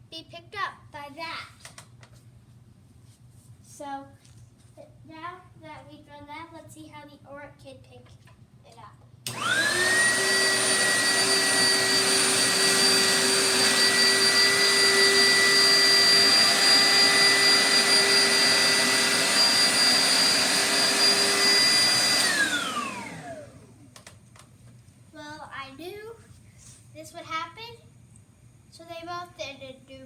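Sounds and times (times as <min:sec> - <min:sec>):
vacuum cleaner motor whine: 0:09.3 - 0:24.0.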